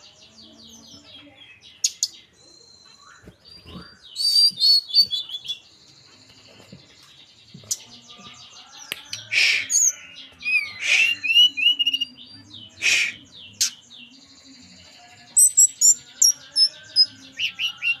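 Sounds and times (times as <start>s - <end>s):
songbird whistled notes: 2.8s - 5.6s, 8.9s - 13.8s
bird harsh calls: 9.2s - 11.8s, 12.8s - 13.8s.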